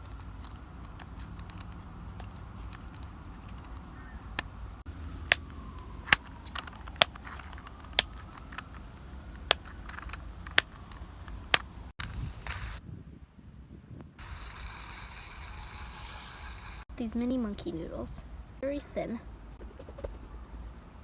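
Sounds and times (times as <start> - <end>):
plastic fidget toy clicks: 5.2 - 12.8, 14.2 - 16.8.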